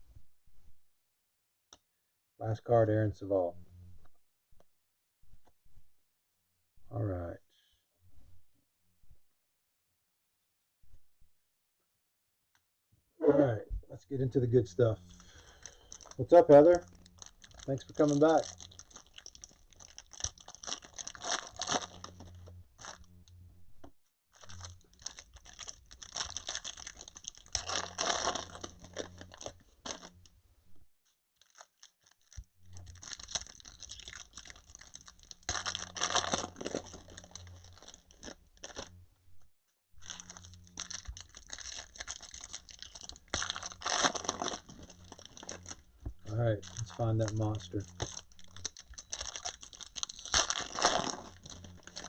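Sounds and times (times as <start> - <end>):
card packaging crinkling and tearing: 14.8 - 23.2, 24.4 - 30.2, 31.4 - 38.9, 40.0 - 52.0.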